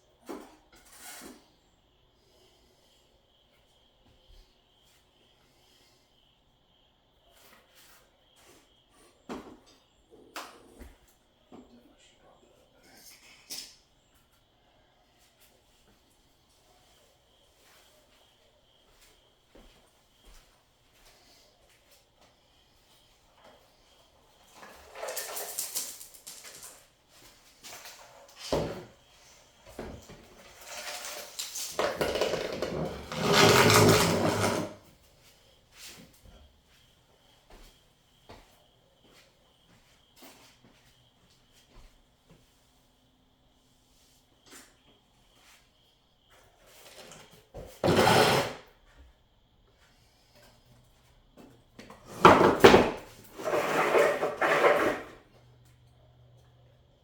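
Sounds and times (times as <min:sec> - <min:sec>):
packaging rustling and scraping: 0:30.5 - 0:34.8
packaging scraping and sliding: 0:32.6 - 0:34.8.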